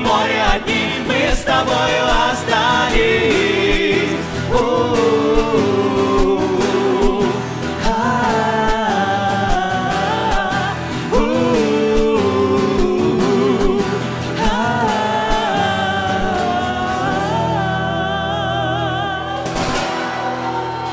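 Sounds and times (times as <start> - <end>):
drum beat: 0.0 - 6.4
instrumental backing: 0.0 - 20.9
wordless sung notes with vibrato: 0.0 - 20.9.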